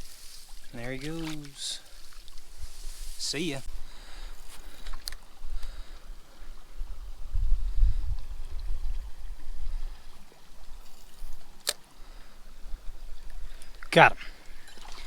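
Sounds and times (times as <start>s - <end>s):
mountain stream running: 0.0s - 15.0s
low rumble on microphone: 5.5s - 10.8s.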